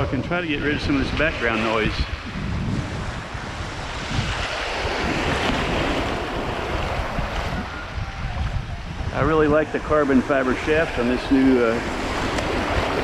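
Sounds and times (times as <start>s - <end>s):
surf waves washing in: 0.0s - 13.0s
wind on microphone: 0.0s - 13.0s.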